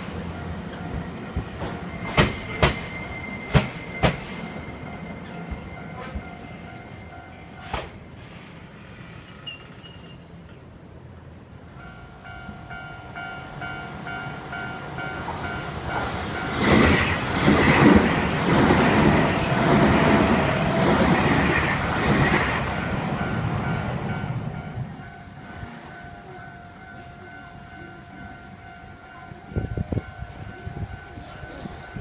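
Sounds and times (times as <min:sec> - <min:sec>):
train rumbling past: 0:00.0 - 0:32.0
two-tone crossing bell clanging: 0:00.3 - 0:08.5, 0:11.7 - 0:32.0
train wheels clattering: 0:00.9 - 0:08.7
crossing alarm electronic bell: 0:01.9 - 0:08.3.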